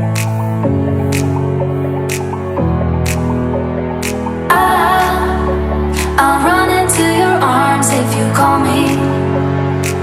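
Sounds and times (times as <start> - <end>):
steady beat: 0.0 - 7.3
synth chords: 0.0 - 10.0.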